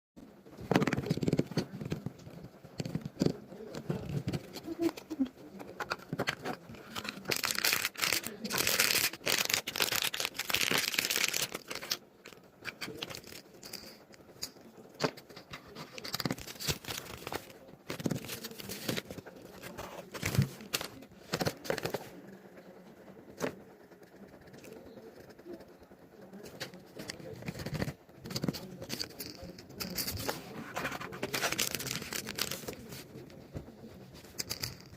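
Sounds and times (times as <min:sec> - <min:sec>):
packaging crackles and clicks: 0:05.8 - 0:22.0, 0:31.1 - 0:33.0
packaging tearing and crinkling: 0:06.3 - 0:13.7, 0:15.9 - 0:21.6, 0:31.2 - 0:32.8.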